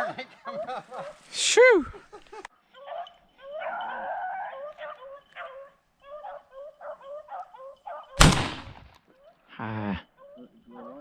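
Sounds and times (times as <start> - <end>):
hounds yipping and baying: 2.8 - 8.2, 10.1 - 11.0
loud gunshot: 8.2 - 8.9.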